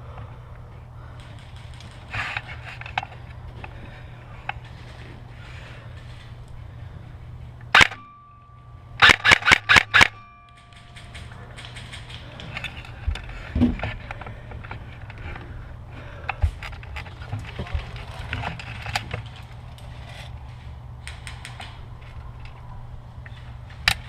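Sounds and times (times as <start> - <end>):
airsoft gun shots: 7.7 - 8.1, 9.0 - 10.4.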